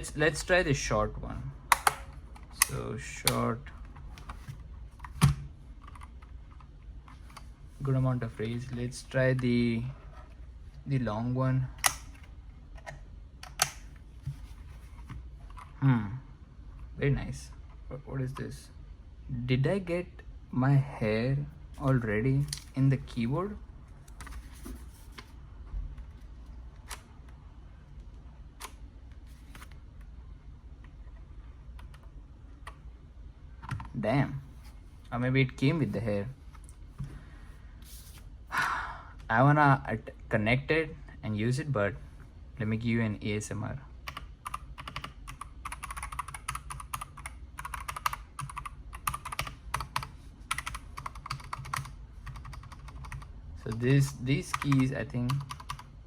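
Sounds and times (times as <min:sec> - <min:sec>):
mechanical keyboard typing: 0:44.1 - 0:53.8, 0:54.4 - 0:55.9.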